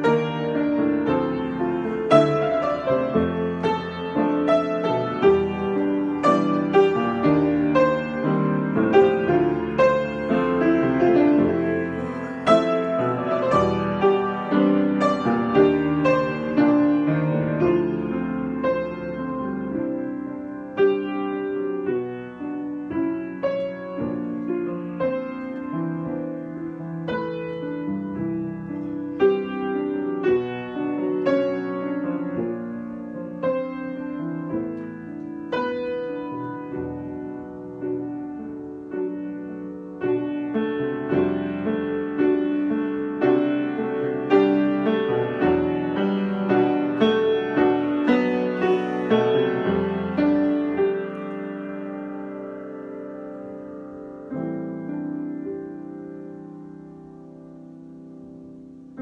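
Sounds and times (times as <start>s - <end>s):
solo piano improvisation: 0.0s - 59.0s.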